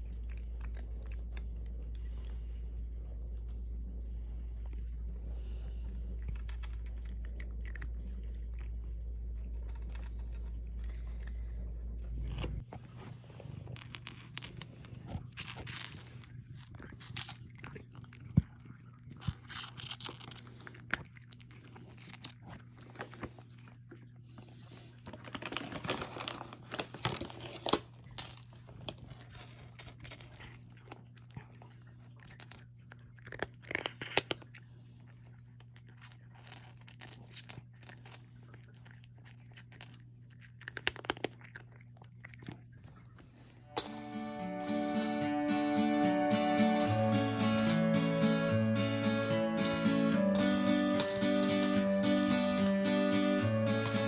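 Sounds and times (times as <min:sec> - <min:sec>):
low hum: 0:00.0 - 0:17.8, 0:43.6 - 0:54.0
cat chewing and crunching: 0:00.0 - 0:44.1, 0:45.0 - 0:54.0.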